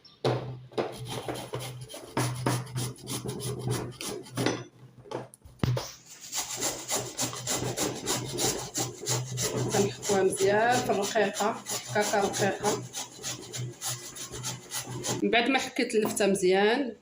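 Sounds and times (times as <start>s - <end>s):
turnip grated on a grater: 1.0s - 4.4s, 6.2s - 15.2s.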